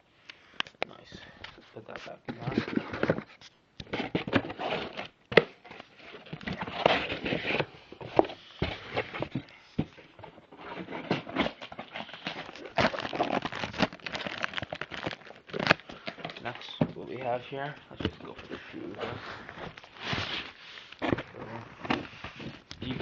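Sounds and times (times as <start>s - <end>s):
packaging rustling and crinkling: 1.5s - 23.0s.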